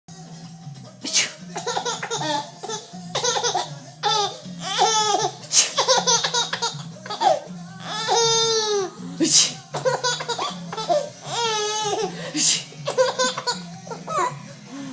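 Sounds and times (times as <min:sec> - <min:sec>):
baby giggling: 0:01.5 - 0:14.4
woman sneezing: 0:09.2 - 0:09.7, 0:12.4 - 0:12.8.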